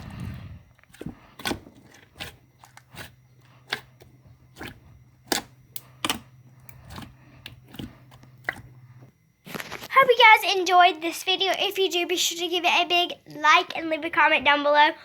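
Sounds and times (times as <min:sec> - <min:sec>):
slime squished by hand: 0:00.0 - 0:08.8
sharp clicks and pops: 0:04.6 - 0:08.7, 0:09.4 - 0:10.0.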